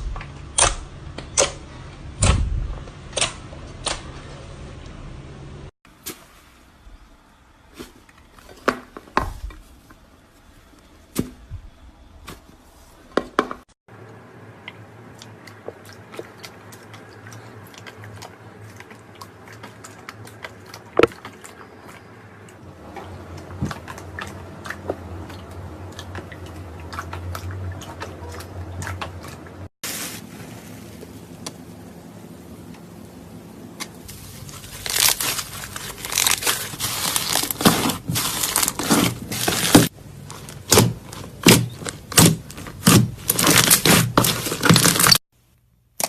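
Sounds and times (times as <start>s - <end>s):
slime squishing with pops: 34.1s - 45.2s.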